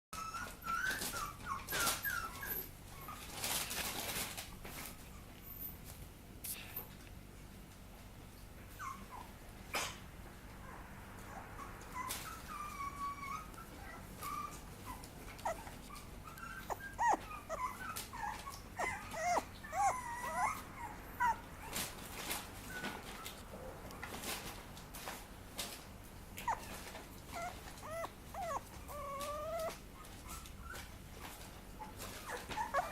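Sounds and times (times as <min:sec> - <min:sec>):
puppy whimpering squeaks: 0:00.2 - 0:03.6, 0:08.7 - 0:09.3, 0:11.3 - 0:21.9, 0:22.6 - 0:23.4, 0:26.4 - 0:31.0, 0:31.8 - 0:32.9
rustling: 0:00.2 - 0:06.1, 0:21.2 - 0:32.9.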